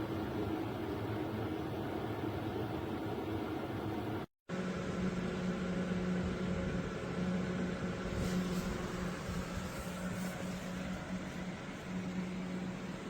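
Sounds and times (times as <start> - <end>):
electric motor hum: 4.7 - 13.0.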